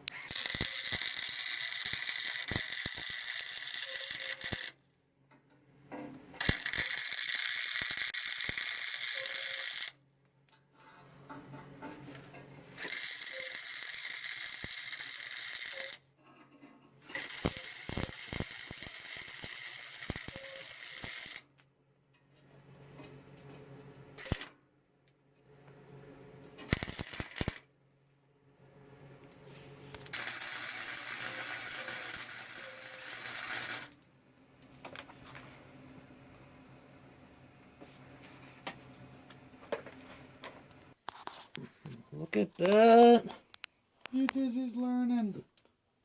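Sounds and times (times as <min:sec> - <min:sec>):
arc welding crackling: 0:00.0 - 0:04.8, 0:06.4 - 0:10.0, 0:12.8 - 0:16.0, 0:17.1 - 0:21.6, 0:24.2 - 0:24.5, 0:26.6 - 0:27.7, 0:30.0 - 0:34.1.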